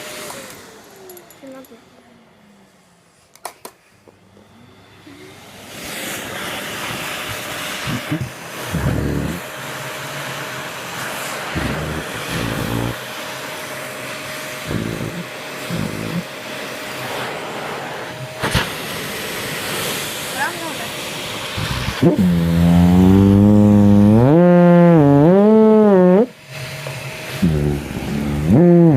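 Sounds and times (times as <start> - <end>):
vacuum cleaner motor whine: 0.0 - 3.2, 4.0 - 28.9
low blatting farting sounds: 7.8 - 9.5, 11.6 - 13.0, 14.7 - 16.3, 21.6 - 26.3, 27.4 - 28.9.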